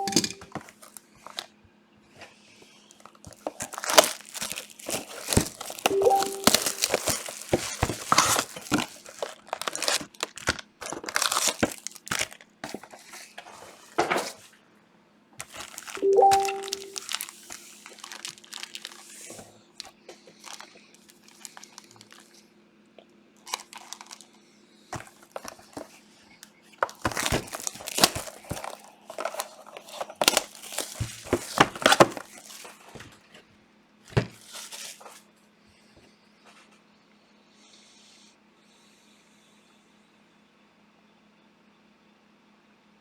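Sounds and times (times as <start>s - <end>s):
plastic wrapping crinkling: 0.0s - 1.5s, 2.9s - 13.0s, 15.4s - 22.4s, 23.4s - 24.3s, 25.0s - 26.0s, 26.8s - 33.1s, 34.2s - 35.2s.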